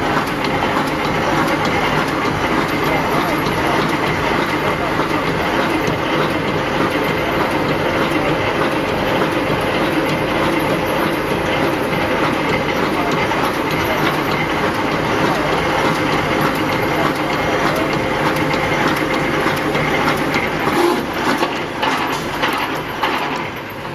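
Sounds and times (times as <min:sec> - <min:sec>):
constant machine noise: 0:00.0 - 0:23.9
wire mesh machine clattering: 0:15.9 - 0:23.7.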